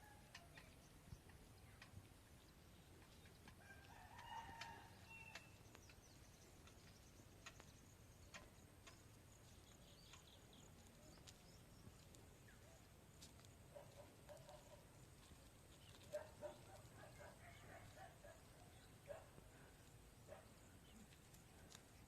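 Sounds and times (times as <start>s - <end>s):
faint rooster crow: 0.0s - 0.7s, 3.5s - 5.6s.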